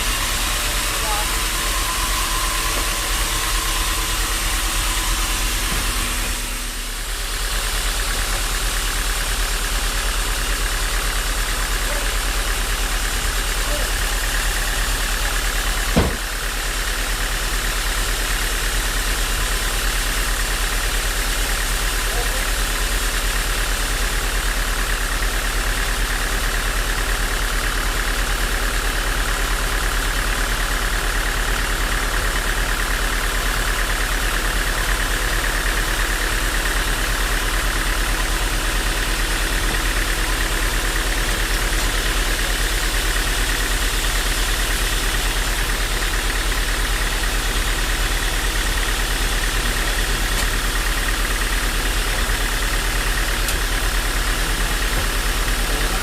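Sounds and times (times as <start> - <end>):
high machine whirr: 0.0 - 8.7, 46.7 - 56.0
sawmill machinery hum: 0.0 - 56.0.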